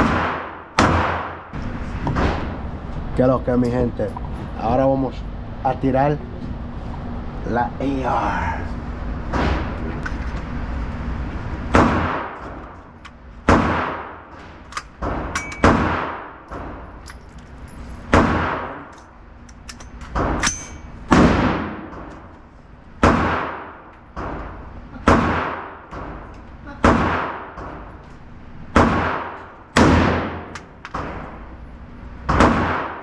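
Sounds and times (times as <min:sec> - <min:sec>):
gunshots echoing: 0:00.0 - 0:02.6, 0:11.7 - 0:12.6, 0:13.4 - 0:14.4, 0:15.0 - 0:16.8, 0:18.1 - 0:18.9, 0:21.1 - 0:22.1, 0:23.0 - 0:26.2, 0:26.8 - 0:27.9, 0:28.7 - 0:31.6, 0:32.3 - 0:33.0.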